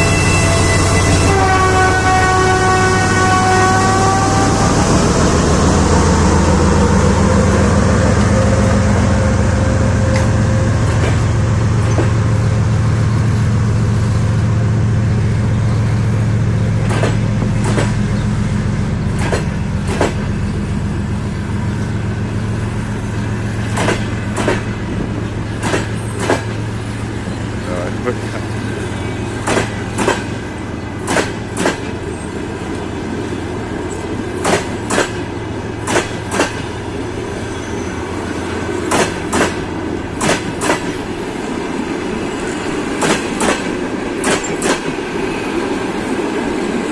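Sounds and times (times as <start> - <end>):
diesel locomotive engine droning: 0.0 - 46.9
wheels clicking over rail joints: 23.6 - 24.8, 25.6 - 26.6, 38.8 - 41.4, 43.0 - 45.0.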